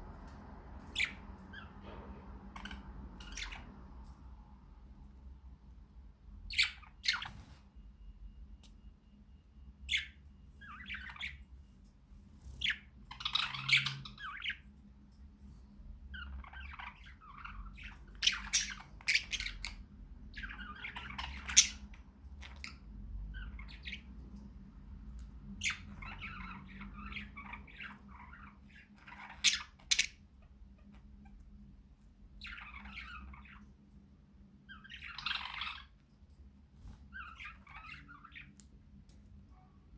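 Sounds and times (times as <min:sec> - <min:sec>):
budgerigars chattering and warbling: 0:02.5 - 0:03.8, 0:06.5 - 0:07.6, 0:09.9 - 0:11.4, 0:12.5 - 0:14.6, 0:16.1 - 0:24.2, 0:25.6 - 0:30.2, 0:32.4 - 0:33.6, 0:34.7 - 0:36.0, 0:37.1 - 0:38.6.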